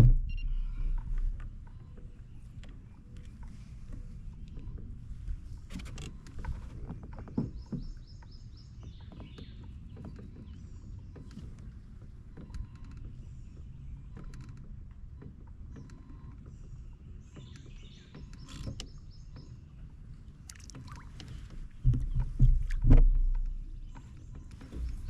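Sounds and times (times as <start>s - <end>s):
loud dull thumps: 0.0s - 1.4s, 21.8s - 23.6s
water moving against kayak: 0.0s - 25.0s
small knocks on hull: 5.6s - 16.5s, 20.5s - 25.0s
birds chirping: 7.3s - 14.4s, 15.7s - 22.5s.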